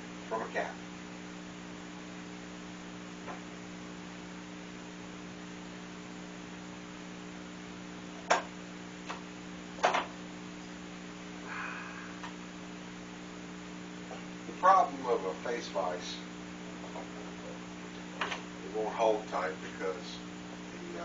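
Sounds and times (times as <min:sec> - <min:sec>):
electrical mains hum: 0:00.0 - 0:21.0
sharp knocks or clicks: 0:08.3 - 0:08.5.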